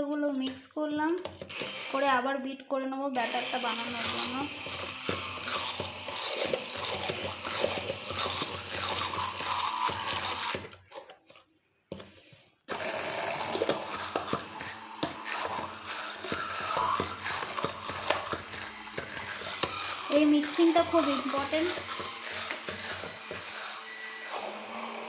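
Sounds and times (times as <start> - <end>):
whisk clicking and scraping a bowl: 3.6 - 12.0, 12.7 - 24.1.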